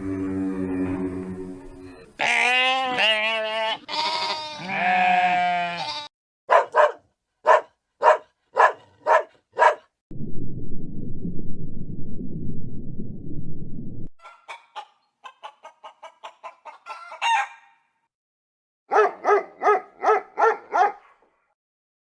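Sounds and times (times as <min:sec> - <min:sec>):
goat bleating: 0:02.2 - 0:06.1
dog barking: 0:06.5 - 0:09.9, 0:18.9 - 0:21.5.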